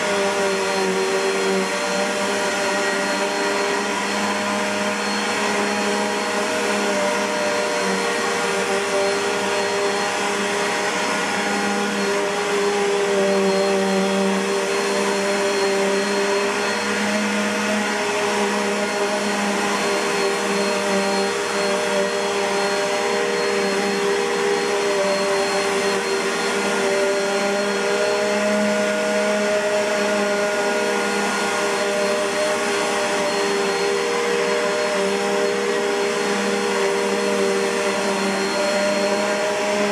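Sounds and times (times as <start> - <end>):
upright vacuum cleaner running: 0.0 - 39.9.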